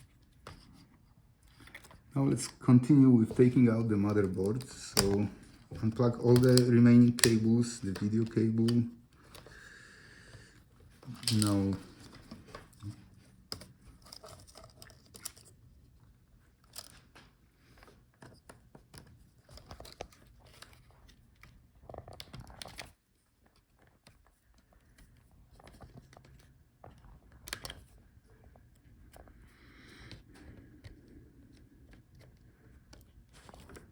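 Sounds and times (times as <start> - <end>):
cable connectors clicking: 1.6 - 9.5, 11.0 - 15.5.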